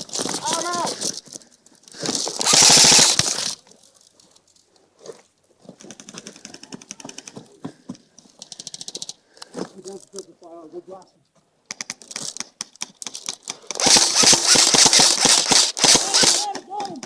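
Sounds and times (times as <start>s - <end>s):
airsoft rifles firing: 2.2s - 3.6s, 13.5s - 16.6s.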